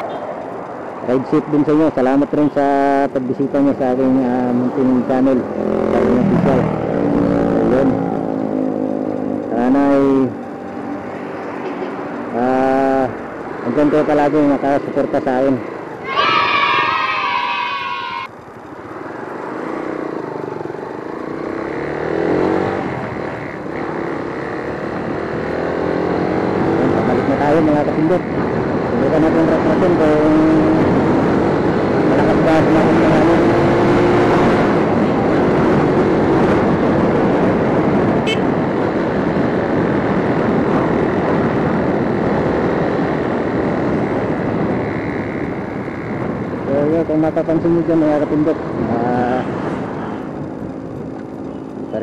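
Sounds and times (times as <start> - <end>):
motorcycle engine revving: 0.0 - 52.0
wind rushing on microphone: 22.1 - 52.0.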